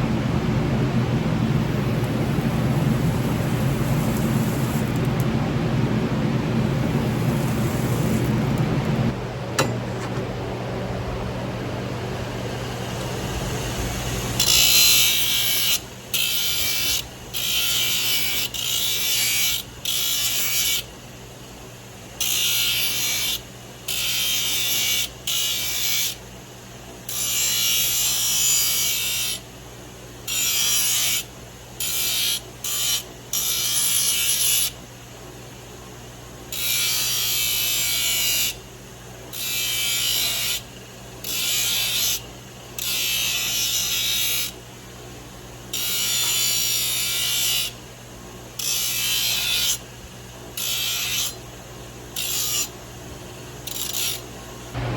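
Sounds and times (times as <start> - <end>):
steady low hum: 0.0 - 17.4.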